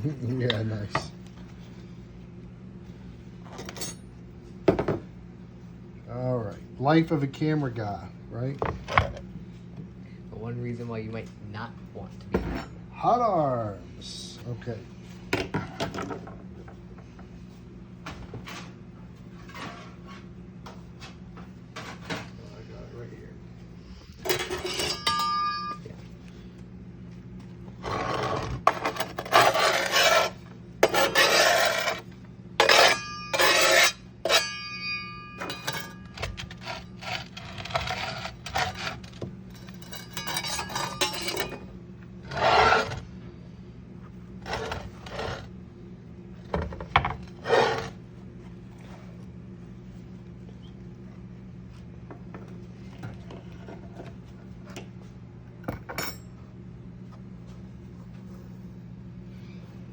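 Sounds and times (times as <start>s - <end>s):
steady low hum: 0.0s - 59.9s
short metallic rings: 24.2s - 25.9s, 32.6s - 36.8s
scraping and rubbing: 27.8s - 41.6s, 42.2s - 43.1s, 44.4s - 45.5s, 47.2s - 48.0s.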